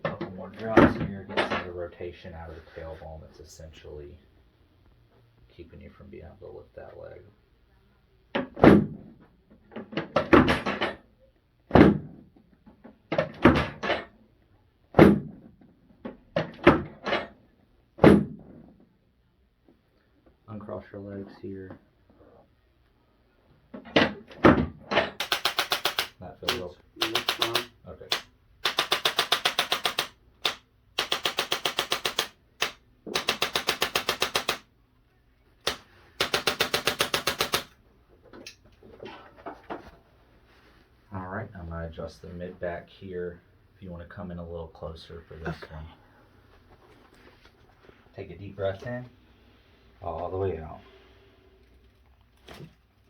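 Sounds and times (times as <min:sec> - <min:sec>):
rapid mechanical clicking: 0:25.2 - 0:34.7, 0:35.6 - 0:37.8.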